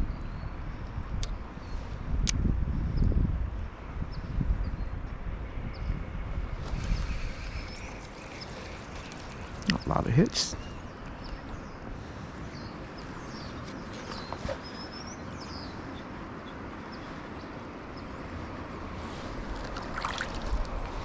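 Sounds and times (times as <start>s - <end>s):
river flowing: 6.6s - 11.3s, 16.7s - 21.0s
high bird chirps: 6.8s - 11.4s.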